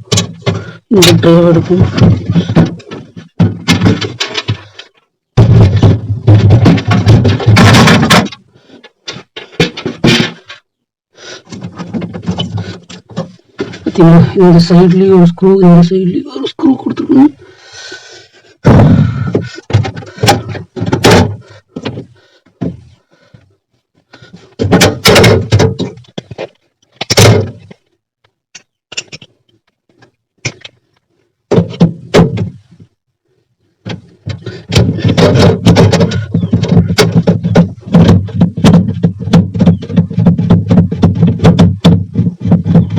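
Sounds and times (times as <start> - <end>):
loud plastic clatter: 0.0 - 10.6, 11.5 - 14.0, 18.7 - 22.8, 24.3 - 27.9, 31.5 - 32.7, 33.8 - 42.9
plastic parts knocking and rattling: 0.0 - 10.7, 11.5 - 15.2, 18.6 - 33.0, 33.8 - 42.9.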